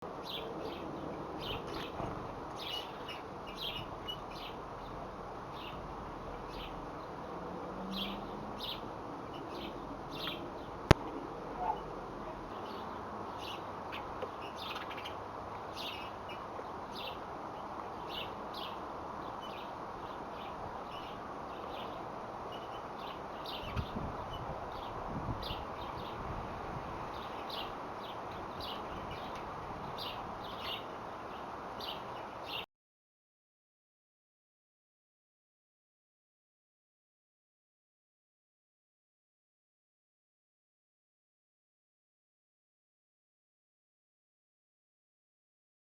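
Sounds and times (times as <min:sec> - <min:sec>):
birds chirping: 0:00.0 - 0:32.7.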